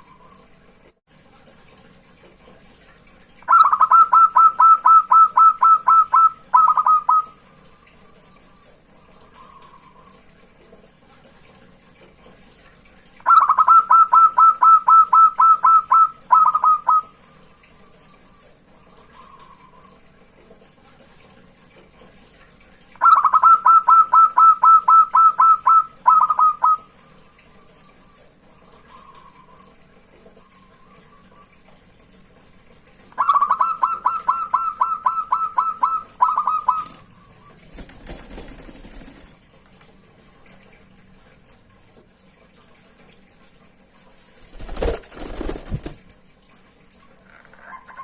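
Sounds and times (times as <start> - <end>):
dove cooing song: 3.5 - 7.4, 13.2 - 17.2, 23.0 - 27.0, 33.2 - 37.7.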